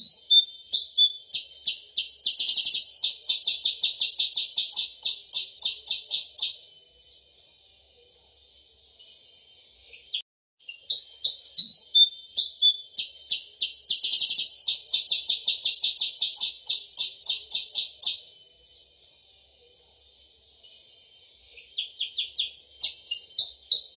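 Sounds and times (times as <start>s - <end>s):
bird chirps and trill: 0.0s - 6.7s, 9.9s - 18.3s, 21.4s - 24.0s.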